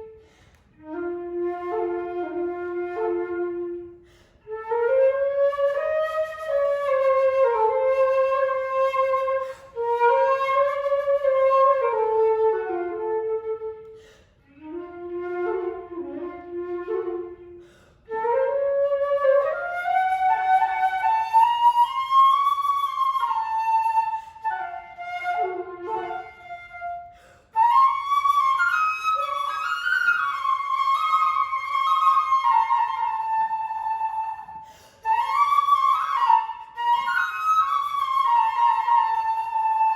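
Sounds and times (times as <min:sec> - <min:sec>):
solo flute melody: 0:00.0 - 0:39.9.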